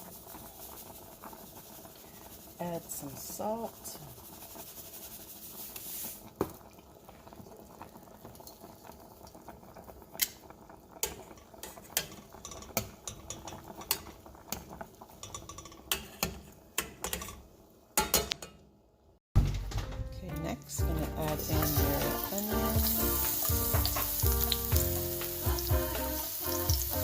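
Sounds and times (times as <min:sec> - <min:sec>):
utensil scraping a cooking pan: 0:11.0 - 0:14.1, 0:15.2 - 0:17.4, 0:21.4 - 0:27.0.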